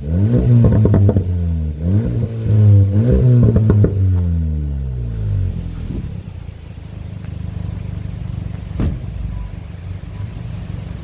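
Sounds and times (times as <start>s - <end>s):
car engine idling: 0.0s - 11.0s
sharp exhaust pop: 5.6s - 7.6s, 8.3s - 9.4s.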